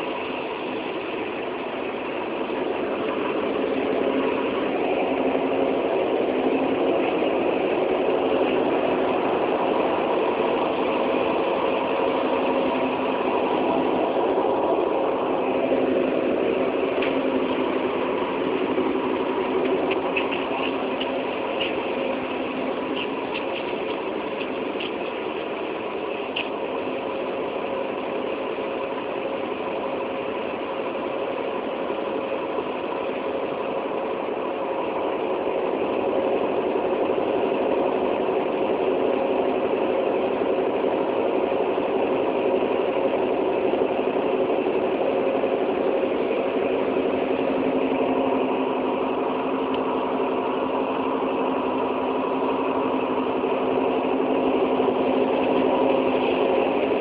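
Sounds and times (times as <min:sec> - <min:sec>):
train diesel engine running: 0:00.0 - 0:57.0.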